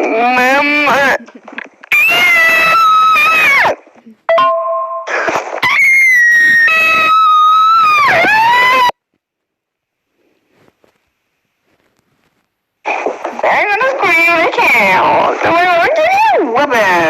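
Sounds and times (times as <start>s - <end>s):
person screaming distorted: 1.9s - 3.8s, 5.6s - 8.9s.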